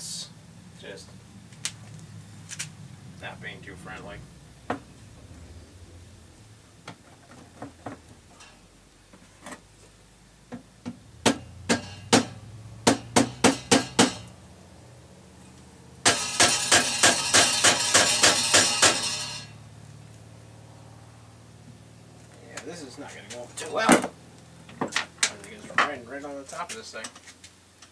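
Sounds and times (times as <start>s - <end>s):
hammer striking metal: 11.2s - 14.3s, 16.0s - 19.6s
metal rattle: 11.3s - 14.3s, 16.0s - 19.6s.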